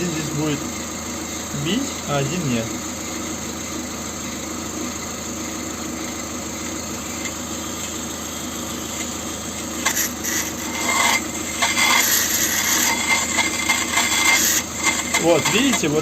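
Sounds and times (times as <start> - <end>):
spinning brake disc humming: 0.0 - 16.0
metal rod scraping on disc: 9.8 - 16.0.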